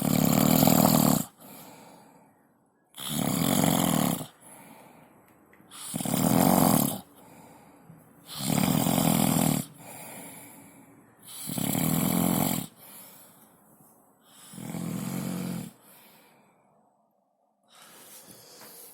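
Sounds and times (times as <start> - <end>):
person snoring heavily: 0.0 - 1.9, 3.0 - 4.7, 5.7 - 7.5, 8.2 - 10.6, 11.3 - 13.1, 14.3 - 15.8
quiet breaths: 0.0 - 2.9, 4.3 - 6.0, 7.0 - 8.4, 9.2 - 11.6, 12.2 - 18.9.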